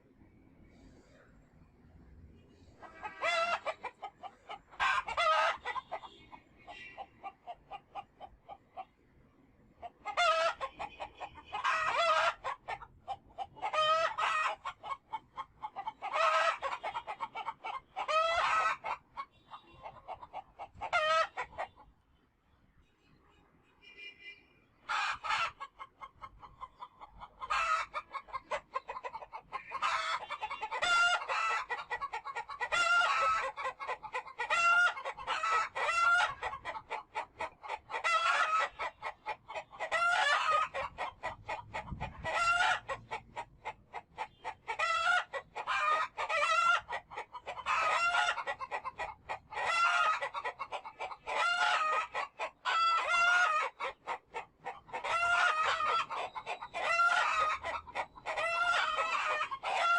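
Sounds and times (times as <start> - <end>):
chickens clucking: 2.4 - 22.0, 24.8 - 59.9.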